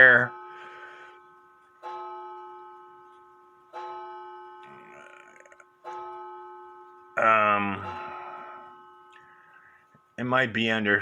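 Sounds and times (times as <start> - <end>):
clock striking: 0.0 - 11.0.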